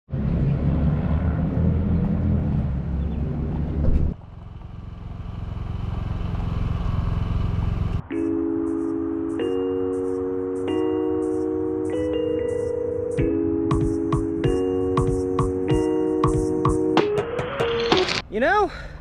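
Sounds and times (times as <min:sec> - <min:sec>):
vehicle engine droning: 0:00.1 - 0:08.1
low hum: 0:00.2 - 0:08.2.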